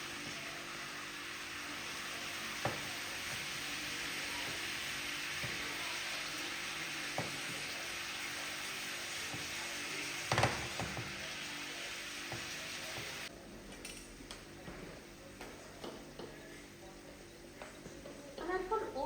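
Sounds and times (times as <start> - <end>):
food sizzling in a frying pan: 0.0 - 13.3.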